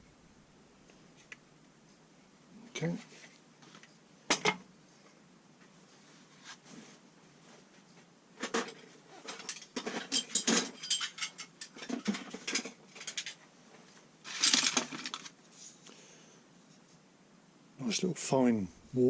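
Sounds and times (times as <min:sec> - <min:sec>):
metal tools clattering: 0:08.5 - 0:13.4
metal hand tools clinking: 0:09.4 - 0:11.8.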